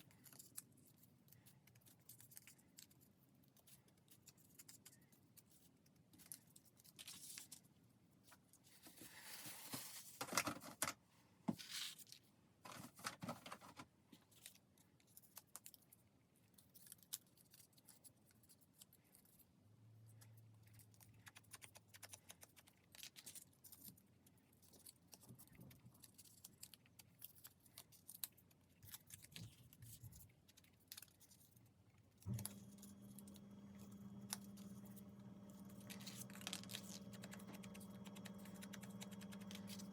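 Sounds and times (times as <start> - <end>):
paper rustling: 8.3 - 10.9, 11.5 - 14.6, 32.3 - 39.9
steady low hum: 32.3 - 39.9.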